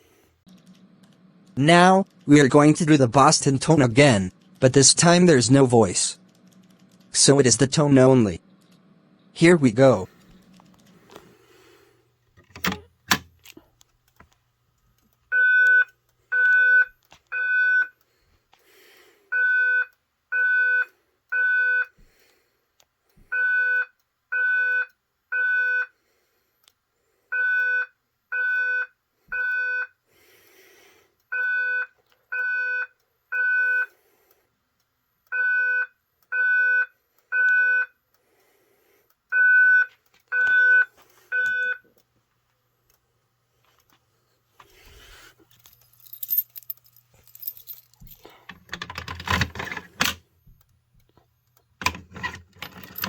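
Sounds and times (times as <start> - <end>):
fire alarm beeps: 15.3 - 18.0, 23.3 - 25.9, 31.3 - 33.9.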